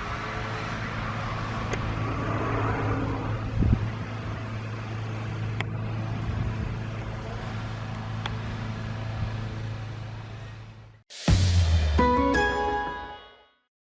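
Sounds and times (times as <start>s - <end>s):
low mechanical hum: 0.0s - 11.0s
music: 11.1s - 13.7s.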